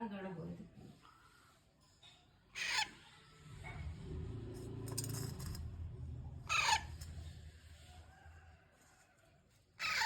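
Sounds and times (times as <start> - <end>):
parrot squawk: 2.6 - 3.0, 6.5 - 6.9, 9.8 - 10.0.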